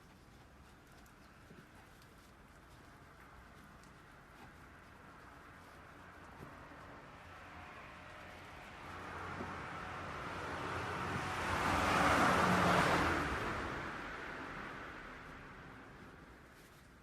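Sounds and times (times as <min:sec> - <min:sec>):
vehicle passing by: 0:05.2 - 0:16.8.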